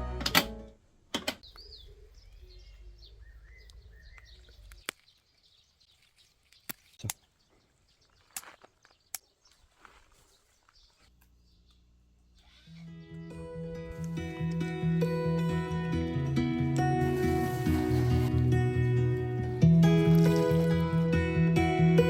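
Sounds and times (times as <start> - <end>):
background music: 0.0 - 0.8, 12.8 - 22.0
small birds chirping: 1.4 - 15.4.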